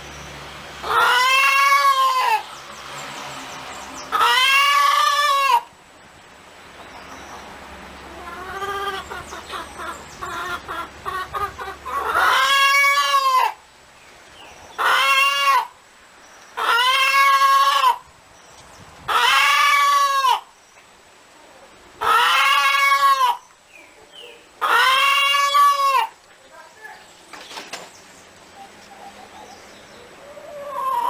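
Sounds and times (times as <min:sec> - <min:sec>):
chicken drawn-out calls: 0:00.8 - 0:02.6, 0:04.0 - 0:05.7, 0:08.0 - 0:13.6, 0:14.7 - 0:15.8, 0:16.5 - 0:18.1, 0:19.1 - 0:20.5, 0:22.0 - 0:23.6, 0:24.2 - 0:26.3, 0:27.5 - 0:31.0
chicken clucking: 0:08.1 - 0:13.6, 0:14.8 - 0:15.7, 0:16.6 - 0:18.0, 0:21.4 - 0:26.4, 0:28.5 - 0:31.0.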